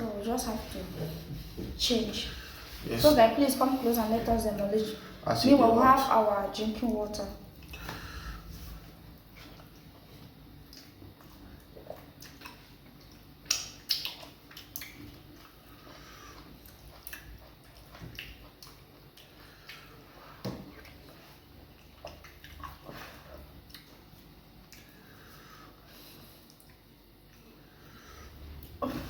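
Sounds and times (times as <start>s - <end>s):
chewing and smacking: 8.7s - 25.4s, 26.3s - 27.7s.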